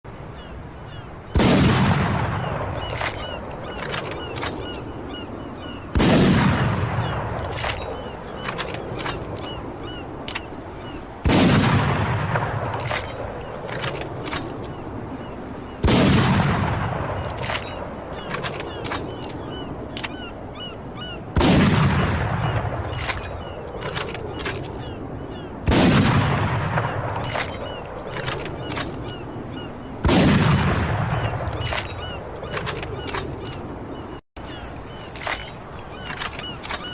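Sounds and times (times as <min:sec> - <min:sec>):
rifle shots echoing: 0:01.4 - 0:04.7, 0:05.9 - 0:09.4, 0:11.2 - 0:14.5, 0:15.8 - 0:19.1, 0:21.4 - 0:24.7, 0:25.7 - 0:29.0, 0:30.0 - 0:33.4.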